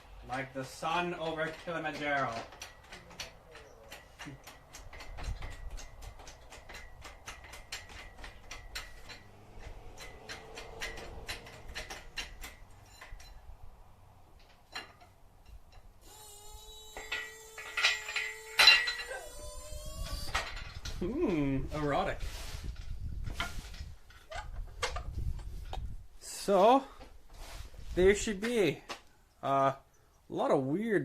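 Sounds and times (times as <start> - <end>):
fast metallic clicking: 1.0 - 13.4
metal clanks with ringing tone: 1.4 - 13.5, 17.0 - 19.4.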